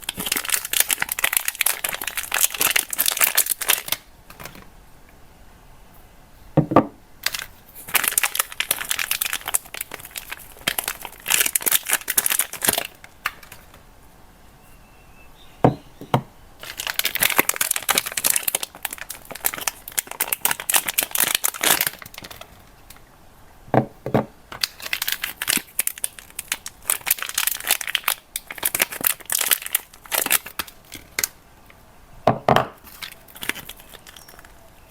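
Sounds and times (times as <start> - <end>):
wrappers crinkling and tearing: 0.0 - 4.7, 7.2 - 13.7, 16.6 - 23.0, 24.6 - 31.4, 32.8 - 34.9.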